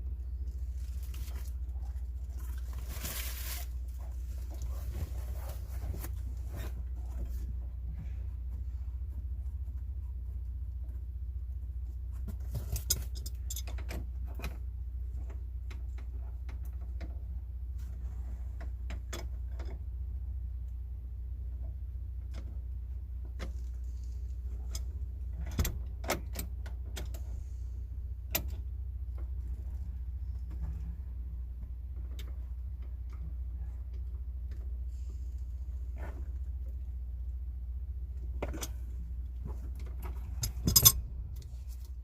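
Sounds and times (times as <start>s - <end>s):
steady low hum: 0.0s - 42.0s
metal tools clinking: 40.2s - 41.1s.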